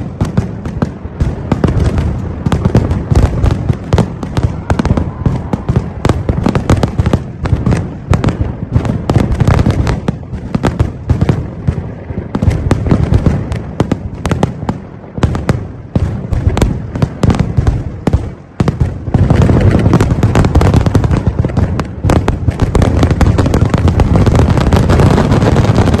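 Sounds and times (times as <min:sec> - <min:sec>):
fireworks exploding: 0:00.0 - 0:26.0.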